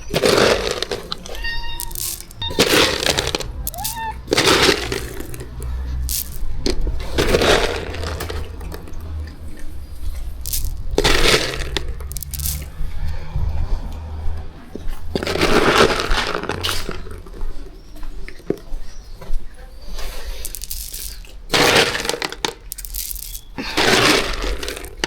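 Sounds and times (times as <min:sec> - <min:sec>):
dry cat food pouring: 0:00.0 - 0:09.3, 0:10.3 - 0:12.7, 0:15.2 - 0:17.3, 0:20.2 - 0:25.0
cat meowing: 0:01.4 - 0:02.6, 0:03.6 - 0:04.3.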